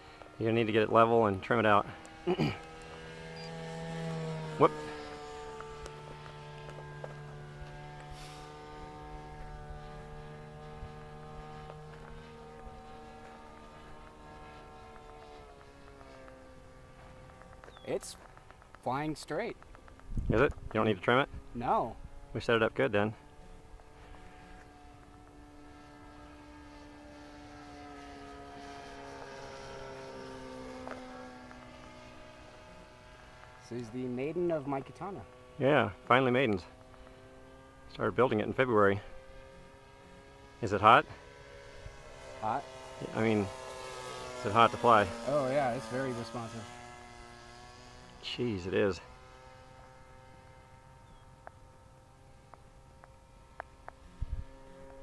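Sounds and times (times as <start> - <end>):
model airplane engine droning: 0.0 - 55.0.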